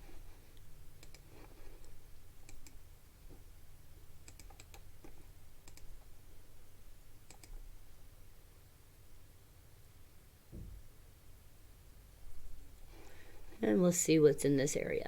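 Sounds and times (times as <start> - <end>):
faint low hum: 0.0 - 15.0
computer keyboard and mouse clicks: 1.0 - 2.8, 4.2 - 6.1, 7.2 - 7.6.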